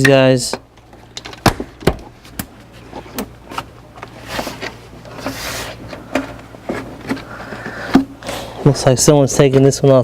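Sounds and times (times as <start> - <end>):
plastic scraping rustle: 2.6 - 8.5.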